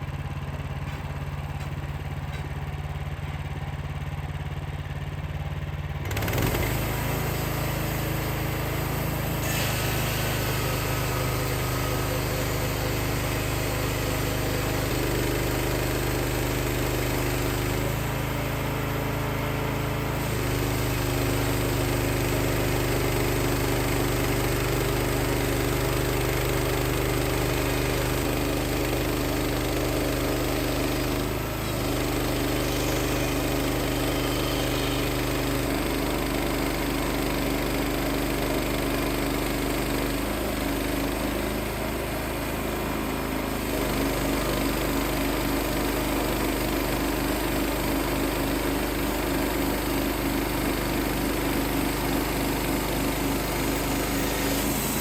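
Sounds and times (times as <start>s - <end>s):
sawmill engine running: 0.0s - 55.0s
band blade cutting log hiss: 9.2s - 14.0s, 52.2s - 55.0s.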